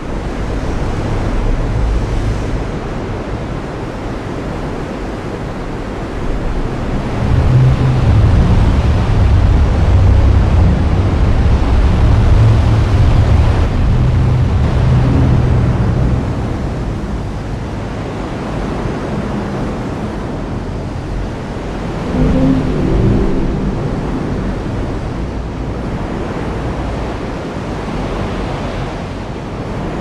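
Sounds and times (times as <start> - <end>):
deep low rumble: 5.4 - 27.3.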